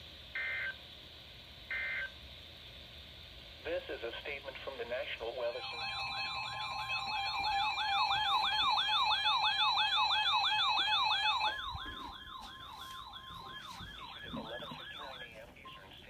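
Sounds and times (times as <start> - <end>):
two-tone attention signal: 5.6 - 15.9
yelping siren: 5.6 - 16.0.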